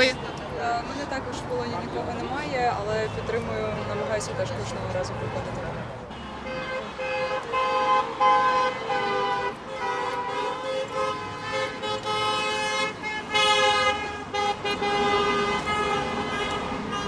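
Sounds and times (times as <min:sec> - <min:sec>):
car horns honking: 0:05.2 - 0:17.0.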